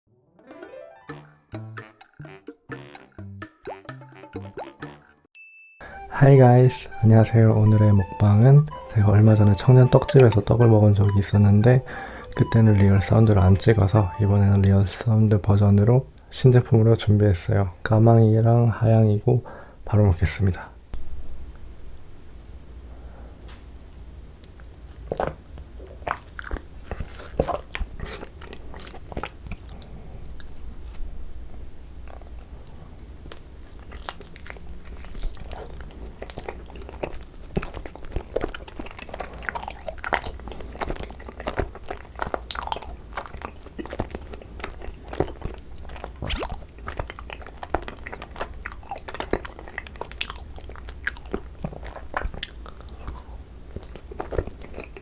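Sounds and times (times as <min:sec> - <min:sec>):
chewing and biting rice cakes: 0:24.5 - 0:31.1, 0:32.0 - 0:55.0.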